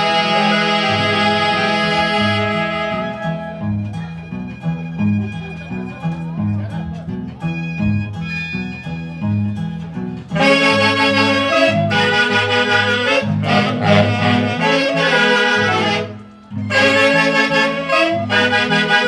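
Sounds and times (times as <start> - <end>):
saxophones playing melody: 0.0 - 3.7, 10.3 - 19.0
band playing: 0.0 - 19.0.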